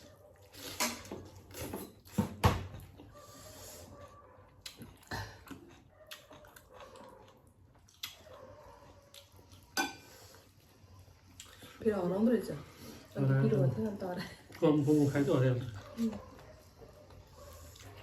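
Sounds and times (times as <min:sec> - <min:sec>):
chewing and mouth noises: 0:00.0 - 0:12.1, 0:15.4 - 0:18.0.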